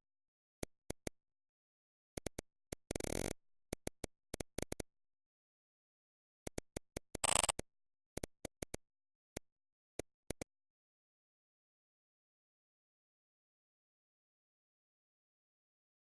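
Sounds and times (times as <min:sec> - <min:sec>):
sharp clicks: 0:06.4 - 0:07.6.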